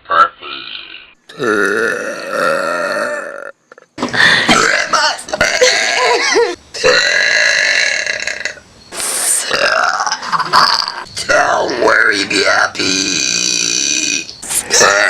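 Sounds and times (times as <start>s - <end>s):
person burping: 1.3s - 8.6s, 9.4s - 11.1s, 12.9s - 15.0s.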